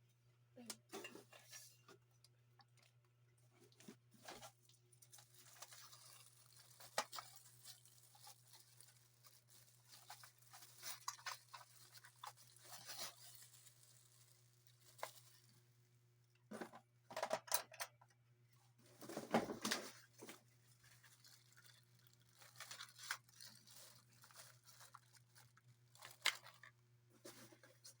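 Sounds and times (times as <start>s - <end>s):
packaging rustling and tearing: 4.2s - 15.5s, 18.9s - 26.7s.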